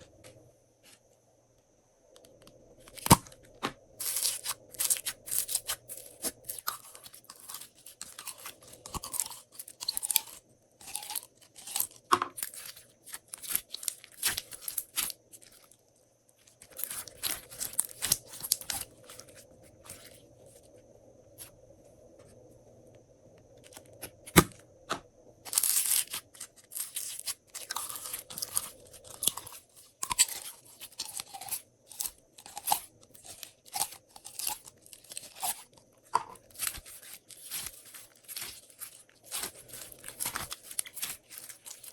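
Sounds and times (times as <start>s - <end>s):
slime squelching and crackling: 4.0s - 15.7s, 16.4s - 20.2s, 25.5s - 35.8s, 36.4s - 41.9s.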